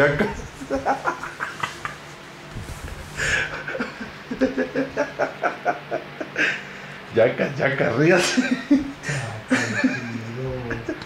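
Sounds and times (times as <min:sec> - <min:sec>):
stifled laughter: 0:03.2 - 0:06.7, 0:08.2 - 0:11.0.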